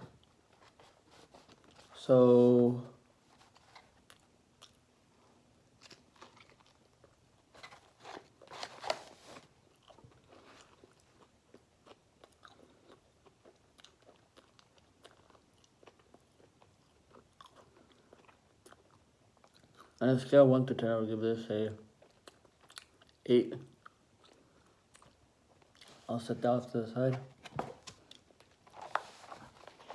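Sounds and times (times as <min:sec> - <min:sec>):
biting and crunching: 0:05.7 - 0:08.7
wet chewing: 0:09.7 - 0:20.0, 0:22.0 - 0:25.9.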